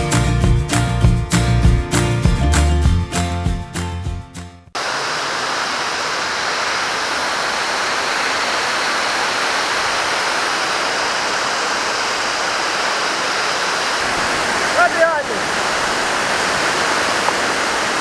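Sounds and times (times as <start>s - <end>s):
waterfall and stream rushing: 4.8s - 18.0s.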